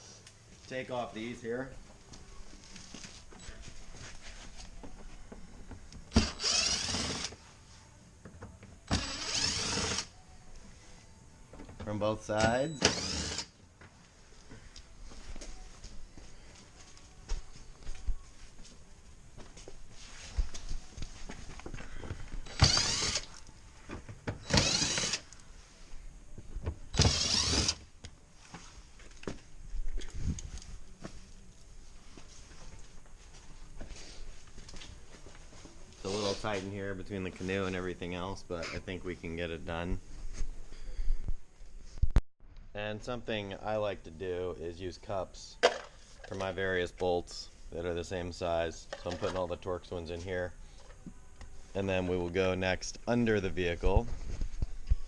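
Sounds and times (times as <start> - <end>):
cordless driver whirring: 6.1 - 7.4, 8.9 - 10.1, 12.8 - 13.5, 22.4 - 23.5, 24.4 - 25.4, 26.9 - 27.8.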